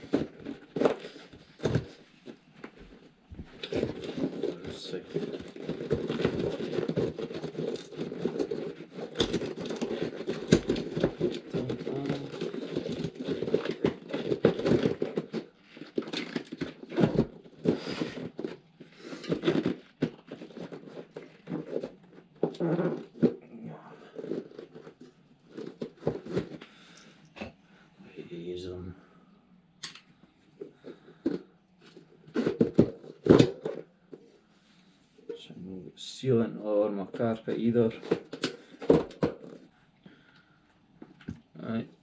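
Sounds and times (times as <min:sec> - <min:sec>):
tyre crinkling and rustling: 0:00.0 - 0:27.0.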